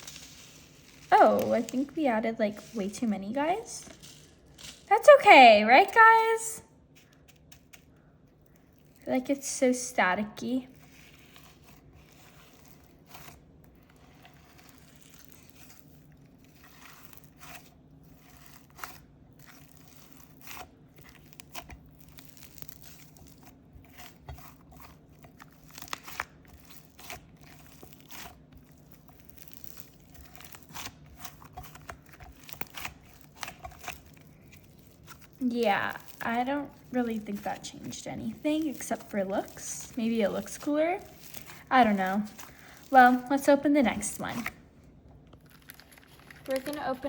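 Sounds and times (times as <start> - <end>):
faint crackles and crunches: 0.0 - 47.0
slime squished by hand: 10.7 - 47.0.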